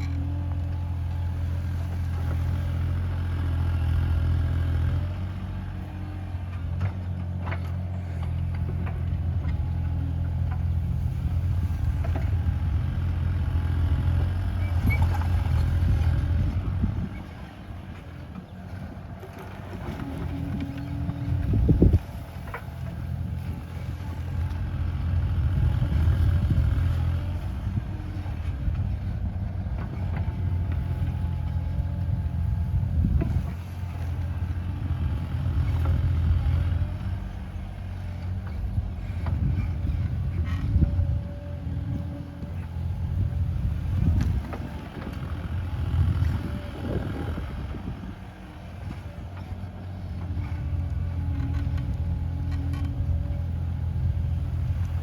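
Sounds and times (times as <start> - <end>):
excavator diesel engine running: 0.0 - 55.0.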